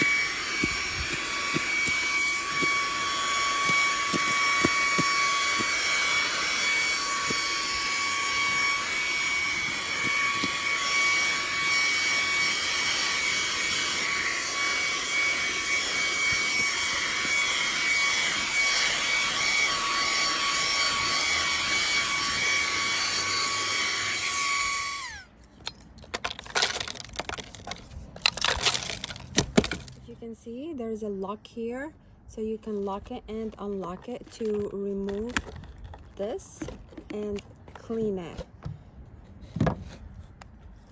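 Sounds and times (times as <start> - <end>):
mini vacuum cleaner whining: 0.0 - 30.0.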